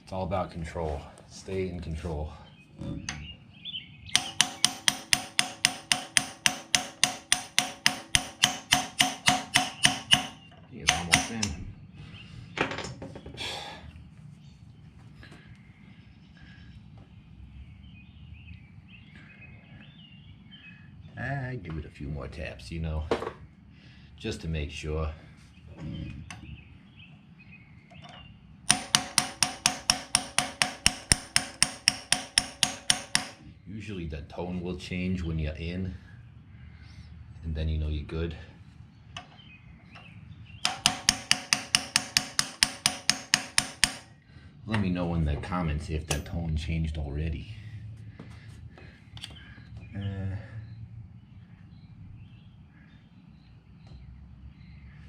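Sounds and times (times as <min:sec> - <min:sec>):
hammer tapping on metal socket: 0:04.2 - 0:11.6, 0:40.6 - 0:44.1.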